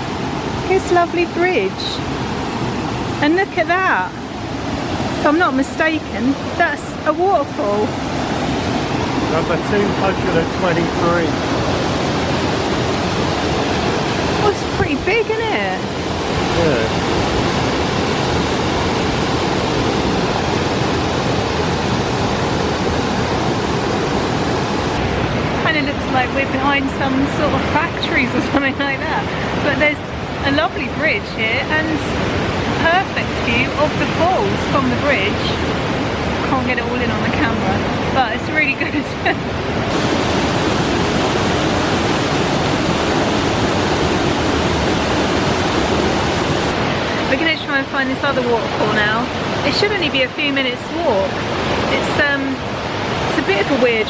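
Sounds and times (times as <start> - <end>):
waterfall rushing: 0.0 - 25.6, 39.5 - 54.0.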